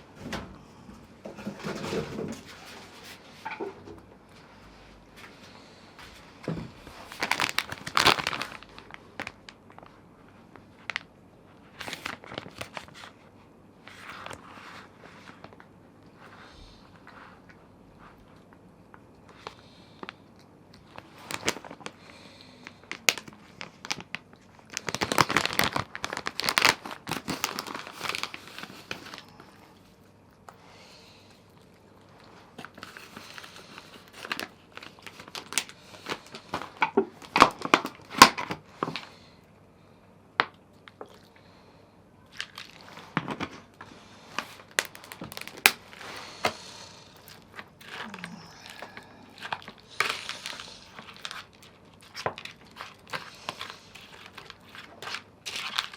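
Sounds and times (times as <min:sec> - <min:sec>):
plastic packaging crinkling: 0:06.8 - 0:13.2, 0:20.8 - 0:29.9, 0:32.0 - 0:39.1, 0:42.3 - 0:55.9.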